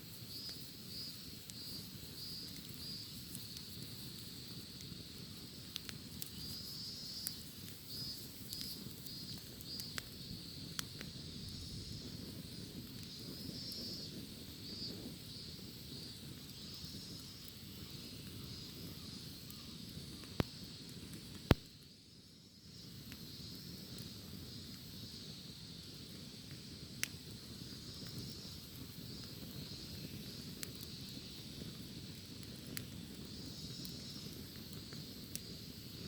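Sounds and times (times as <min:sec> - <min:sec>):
campfire crackling and popping: 0:00.0 - 0:36.0
cicadas buzzing: 0:00.3 - 0:20.7, 0:32.9 - 0:36.0.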